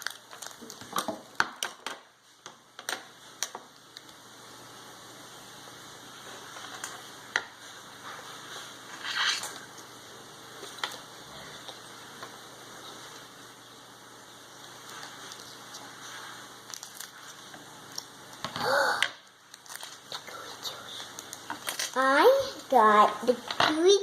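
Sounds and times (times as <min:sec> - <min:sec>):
plastic crinkling rustle: 0:00.0 - 0:01.8, 0:14.7 - 0:18.4, 0:19.4 - 0:22.4.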